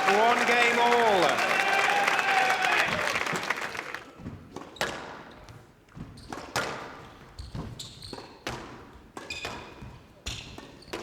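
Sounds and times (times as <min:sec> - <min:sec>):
applause: 0:00.0 - 0:04.2.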